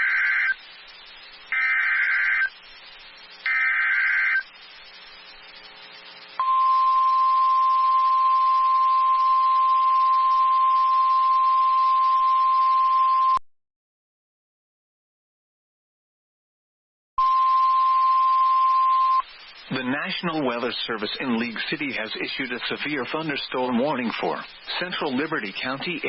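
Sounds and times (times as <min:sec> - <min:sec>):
warbling digital data bursts: 0:00.0 - 0:08.6.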